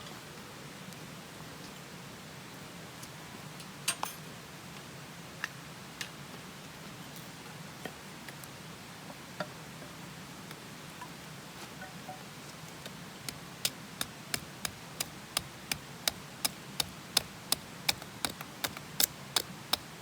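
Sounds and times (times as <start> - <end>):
wood fire crackling: 12.8 - 20.0.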